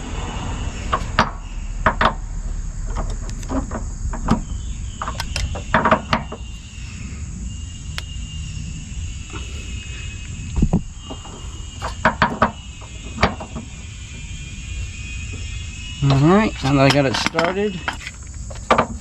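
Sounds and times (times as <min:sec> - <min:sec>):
metal tools clinking and knocking: 0:16.1 - 0:19.0.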